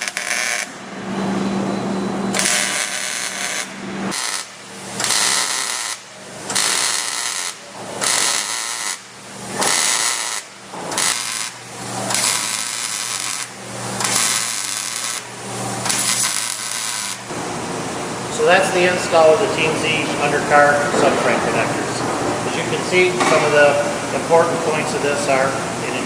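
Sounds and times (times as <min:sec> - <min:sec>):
welding arc crackling and hissing: 0:00.0 - 0:00.8, 0:02.3 - 0:17.4.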